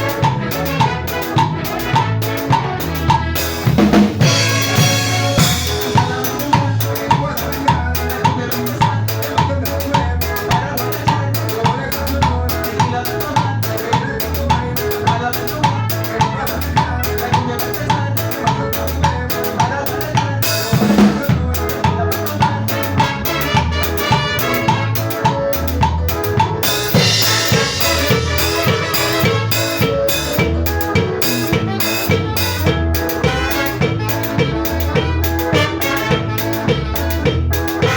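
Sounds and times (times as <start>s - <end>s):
drum fill: 0.0s - 11.3s, 20.1s - 37.9s
band playing instrumental: 0.0s - 37.9s
bass line: 0.0s - 37.9s
drum kit beat: 0.0s - 37.9s.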